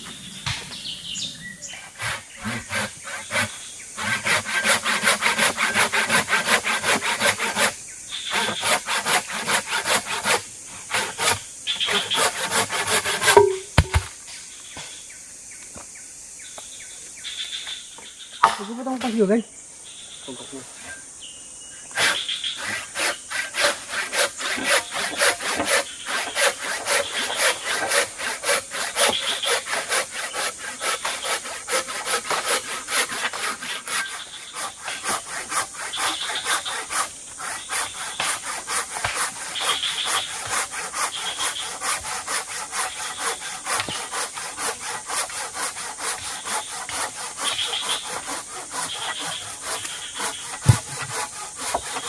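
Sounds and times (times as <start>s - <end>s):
hand saw cutting wood: 1.9s - 14.1s, 21.9s - 52.0s
sharp knock: 13.3s - 14.1s, 50.6s - 51.1s.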